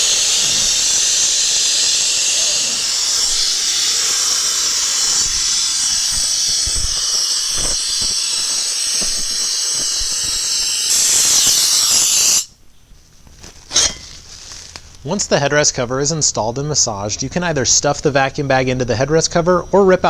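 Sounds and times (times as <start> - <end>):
air-driven vacuum hissing: 0.0 - 12.6.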